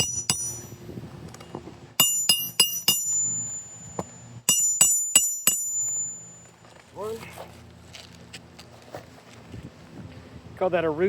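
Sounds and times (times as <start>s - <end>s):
hammer striking metal tool: 0.0s - 0.8s, 2.0s - 6.4s.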